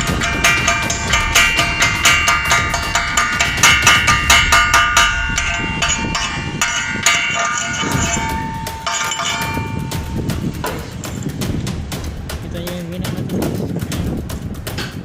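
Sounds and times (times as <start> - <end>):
hammer striking steel: 0.0 - 11.4.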